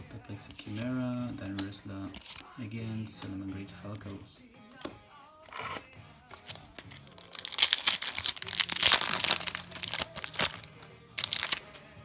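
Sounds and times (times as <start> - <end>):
foil wrapper crinkling and tearing: 5.5 - 11.8.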